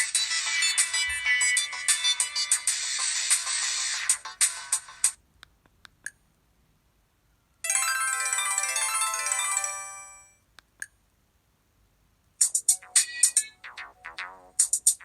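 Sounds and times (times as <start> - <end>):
phone ringtone jingle: 7.6 - 10.4.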